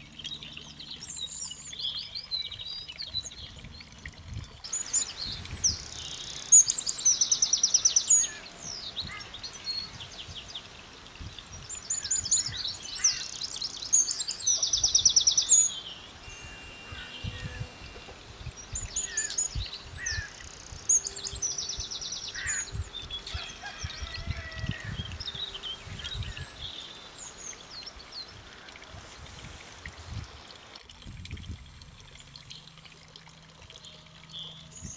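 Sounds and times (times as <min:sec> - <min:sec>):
songbirds trilling: 0:00.0 - 0:30.7
bird chirps and calls: 0:04.7 - 0:29.7.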